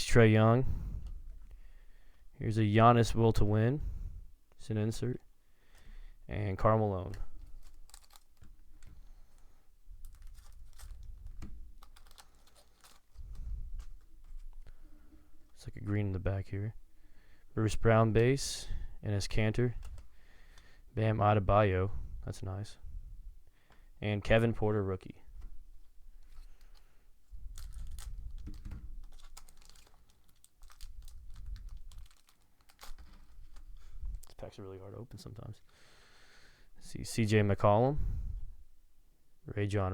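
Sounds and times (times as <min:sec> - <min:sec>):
plastic wrapper crinkling and tearing: 0:07.2 - 0:14.8, 0:26.2 - 0:34.5.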